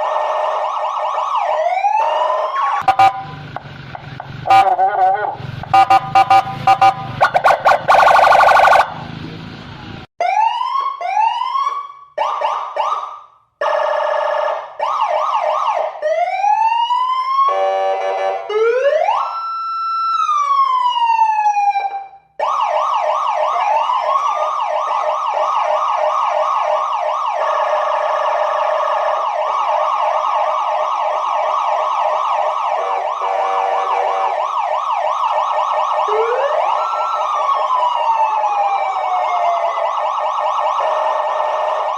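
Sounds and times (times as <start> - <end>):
electronic siren: 0.0 - 3.6, 4.4 - 9.1, 10.2 - 41.9
horn blast: 4.4 - 8.2.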